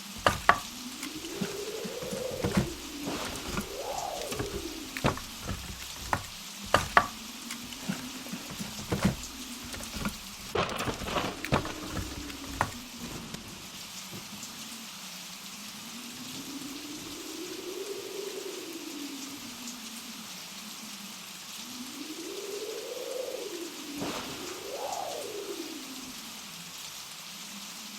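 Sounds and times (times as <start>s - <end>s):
hiss of blowing snow: 0.0s - 5.4s, 21.7s - 27.9s
sharp cracks and knocks: 0.0s - 13.4s
blizzard wind howling: 0.0s - 26.9s.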